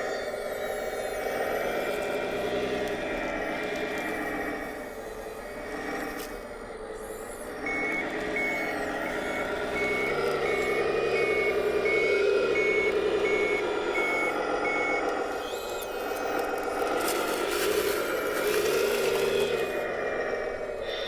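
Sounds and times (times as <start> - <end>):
reversing alarm beeps: 7.5 - 17.0
simulated diesel engine sound: 7.5 - 21.0.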